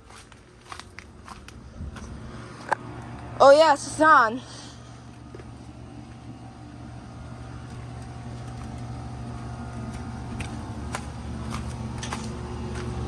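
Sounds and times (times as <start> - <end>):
air conditioner condenser humming: 0.0 - 13.0.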